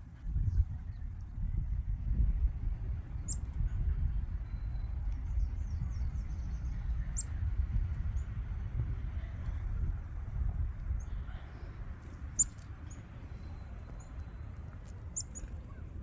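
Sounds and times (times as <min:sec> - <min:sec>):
wind buffeting microphone: 0:00.0 - 0:16.0
faint bird chirps: 0:02.8 - 0:08.4, 0:12.3 - 0:15.9.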